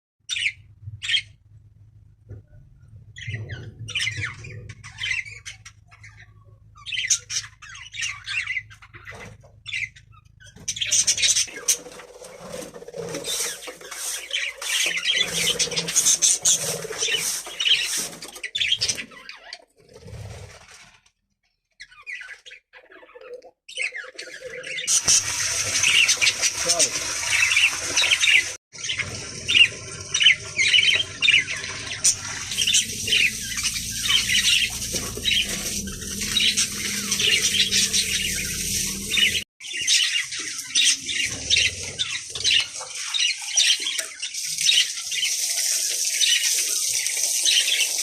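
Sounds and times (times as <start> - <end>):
budgerigars chirping and squawking: 0.3 - 1.4, 3.1 - 19.7, 21.8 - 45.6
low hum: 32.2 - 39.4.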